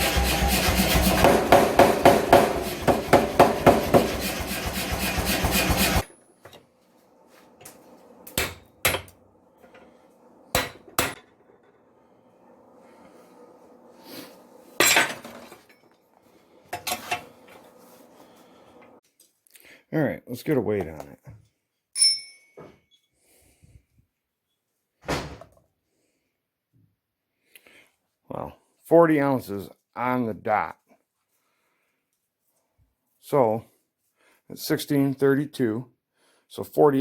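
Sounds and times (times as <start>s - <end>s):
hammer blows on steel: 0.0s - 6.0s
sharp metallic clinks: 22.0s - 22.6s.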